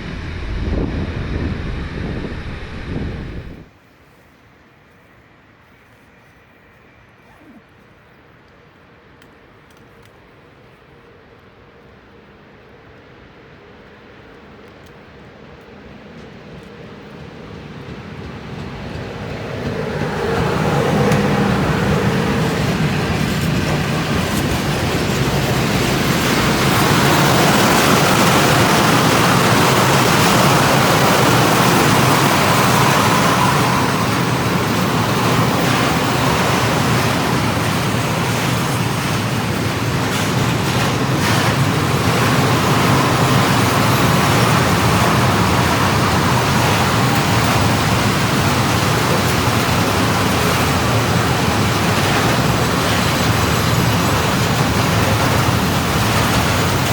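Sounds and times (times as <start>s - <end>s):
train wheels rumbling on rails: 0.0s - 3.8s, 8.6s - 56.9s
faint clicks: 9.2s - 10.3s.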